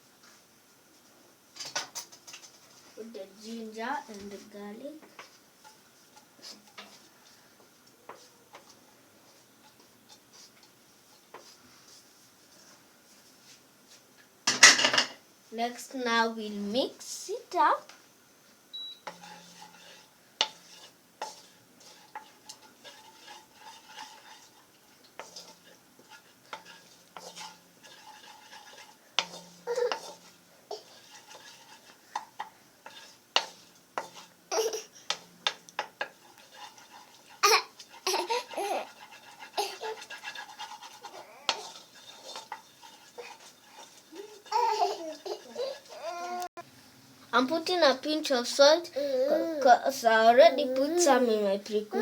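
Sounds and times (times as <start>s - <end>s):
food frying in oil: 0.0s - 52.0s
spoon scraping a pan: 1.6s - 13.6s, 18.7s - 46.5s.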